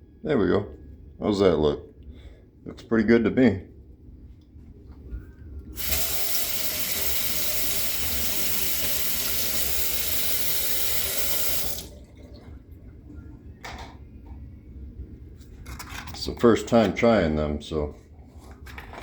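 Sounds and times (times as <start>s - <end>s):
kitchen faucet running: 5.8s - 12.4s.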